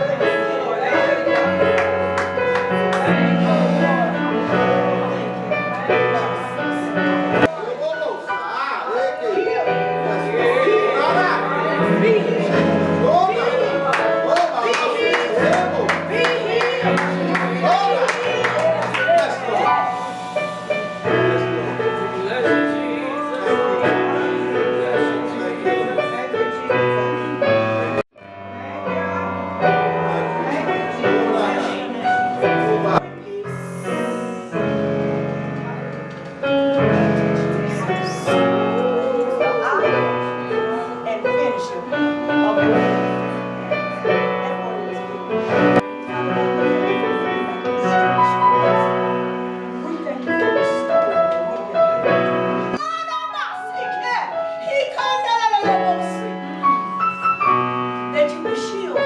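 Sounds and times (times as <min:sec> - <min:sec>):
gospel keyboard chords: 0:00.0 - 0:59.0.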